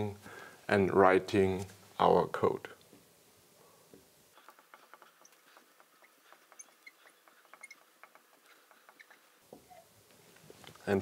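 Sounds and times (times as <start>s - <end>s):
marker ticking on glass: 4.4s - 9.2s
marker squeaking on glass: 4.4s - 9.9s.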